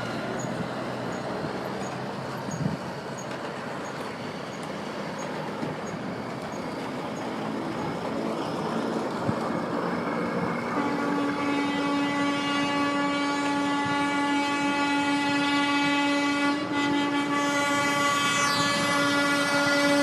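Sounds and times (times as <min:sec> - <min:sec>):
traffic noise: 0:00.0 - 0:20.0
vehicle horn blast: 0:10.8 - 0:20.0.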